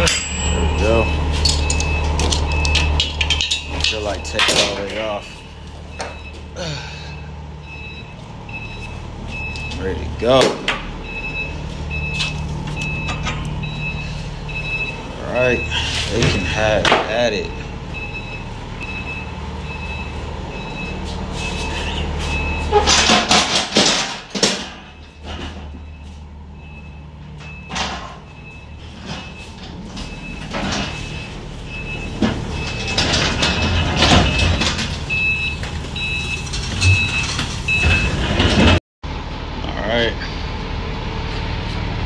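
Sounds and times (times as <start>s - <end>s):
high warning beeps: 0.0s - 10.1s, 11.0s - 16.8s, 17.4s - 22.8s, 25.8s - 38.2s
low engine hum: 0.0s - 22.9s
loud clattering and banging: 21.4s - 26.0s, 27.3s - 38.8s.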